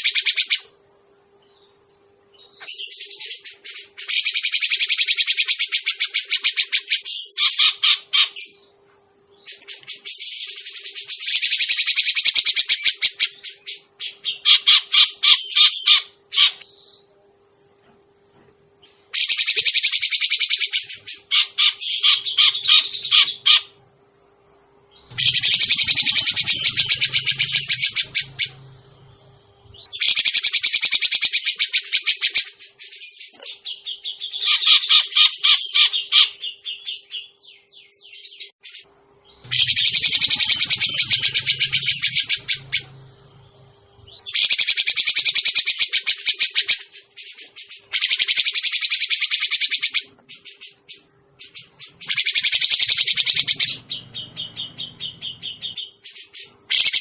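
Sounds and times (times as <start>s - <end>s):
bird harsh chattering: 2.6s - 8.6s, 9.5s - 16.6s, 19.2s - 23.8s, 25.1s - 28.9s, 29.7s - 32.8s, 33.6s - 37.0s, 39.4s - 43.3s, 44.1s - 47.1s, 47.7s - 57.0s.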